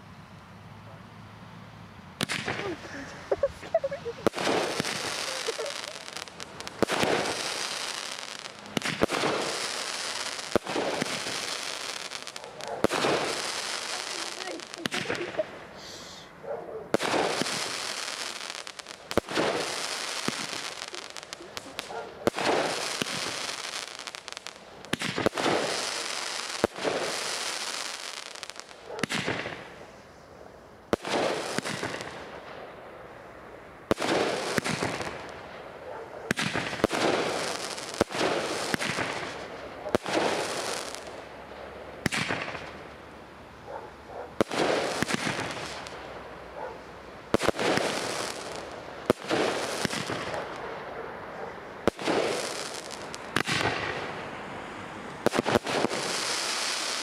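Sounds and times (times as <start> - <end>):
firework bangs: 2.2 - 16.3, 16.9 - 30.1, 30.9 - 33.1, 33.8 - 57.0
firework hissing tails: 2.2 - 30.3, 33.9 - 35.6, 36.3 - 41.4, 44.4 - 46.3, 47.3 - 50.6, 51.8 - 57.0.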